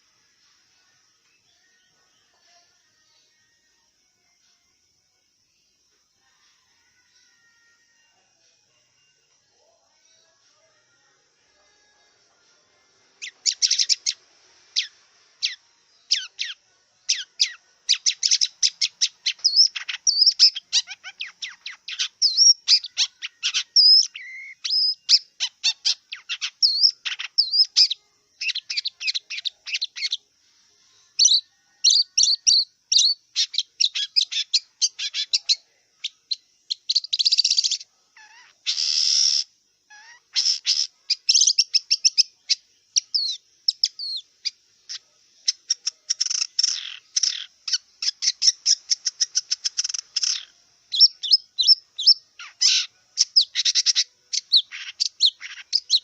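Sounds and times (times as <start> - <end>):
shrike chattering song: 13.2 - 30.2, 31.2 - 56.0
harsh rasping bird calls: 36.9 - 42.2, 45.6 - 56.0.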